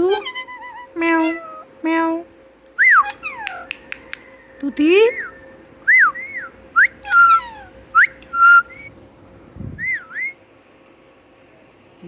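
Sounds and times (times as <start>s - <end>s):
parrot whistling: 0.1s - 1.7s, 2.8s - 9.0s, 9.8s - 10.4s.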